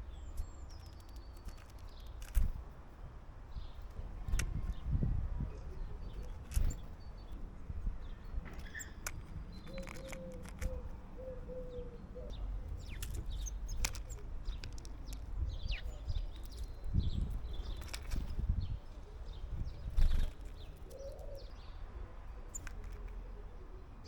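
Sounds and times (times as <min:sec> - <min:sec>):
birds chirping: 0:00.0 - 0:24.0
sharp clicks: 0:00.3 - 0:02.6, 0:08.6 - 0:11.0, 0:12.8 - 0:18.4, 0:22.5 - 0:23.2
dove cooing: 0:09.7 - 0:12.6, 0:20.8 - 0:21.5.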